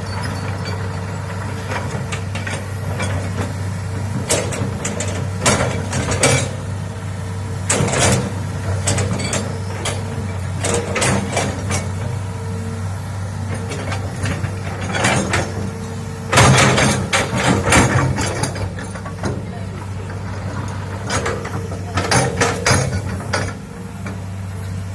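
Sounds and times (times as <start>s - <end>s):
excavator diesel engine running: 0.0s - 24.9s
sharp metallic knocks and clanks: 16.3s - 19.4s, 21.0s - 23.6s.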